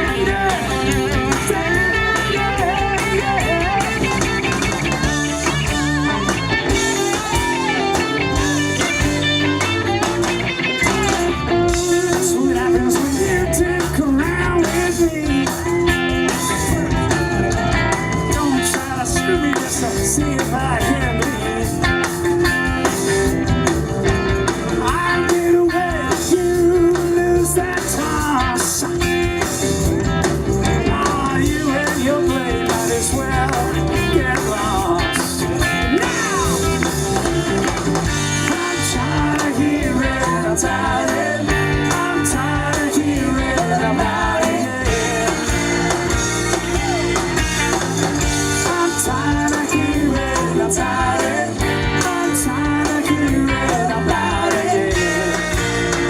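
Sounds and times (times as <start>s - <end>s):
electric guitar: 0.0s - 56.0s
rock band playing: 0.0s - 56.0s.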